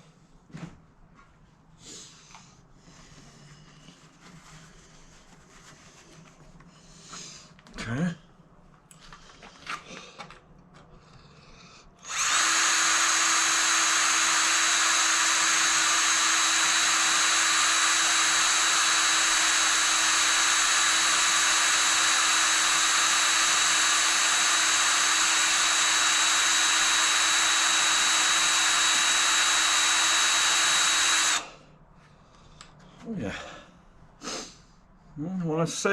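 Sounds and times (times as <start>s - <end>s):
electric drill drilling into metal: 12.0s - 31.6s.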